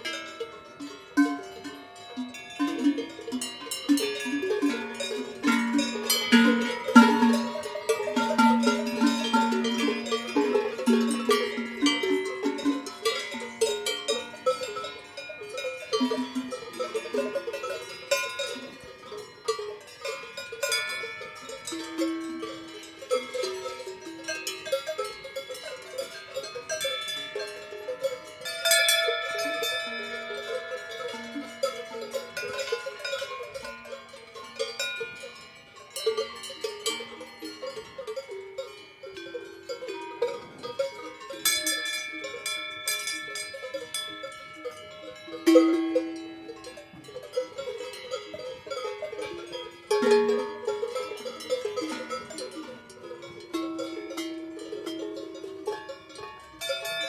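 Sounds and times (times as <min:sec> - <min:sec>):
cowbells clanking: 0:00.0 - 0:57.0.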